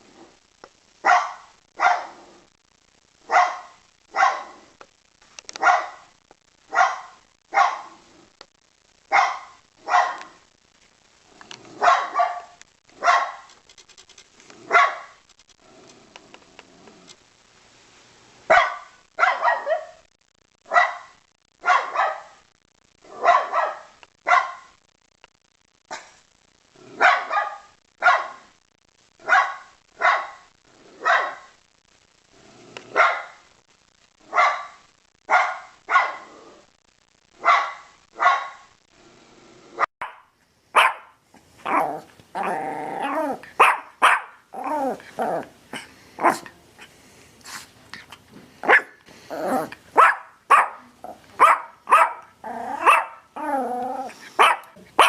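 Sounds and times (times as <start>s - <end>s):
dog barking loudly: 1.0s - 2.2s, 3.3s - 4.6s, 5.6s - 6.1s, 6.7s - 8.0s, 9.1s - 10.4s, 11.8s - 13.5s, 14.7s - 15.2s, 18.5s - 20.0s, 20.7s - 22.4s, 23.1s - 24.7s, 27.0s - 28.4s, 29.2s - 30.4s, 31.0s - 31.5s, 32.9s - 33.4s, 34.3s - 36.3s, 37.4s - 38.7s, 40.0s - 46.5s, 48.6s - 55.0s.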